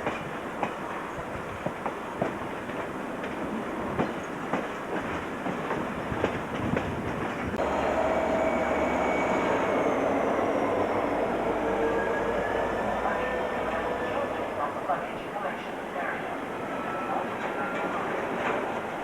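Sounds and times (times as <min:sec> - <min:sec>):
train wheels clicking on rails: 0:00.0 - 0:15.1
high whining tones: 0:07.6 - 0:14.8.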